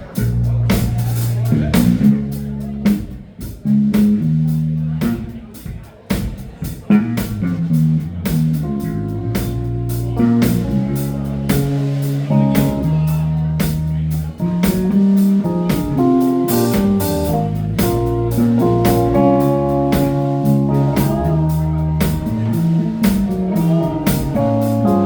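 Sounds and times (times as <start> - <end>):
drum kit beating: 0.0 - 25.0
electric guitar playing blues-rock: 6.9 - 25.0.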